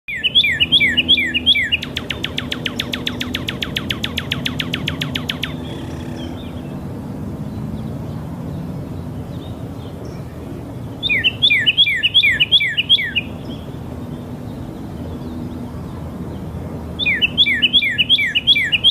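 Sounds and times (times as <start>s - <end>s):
songbird whistled notes: 0.1s - 6.5s, 11.0s - 13.3s, 17.0s - 18.9s
songbird rattling trill: 0.1s - 6.8s, 11.0s - 13.7s, 17.0s - 18.9s.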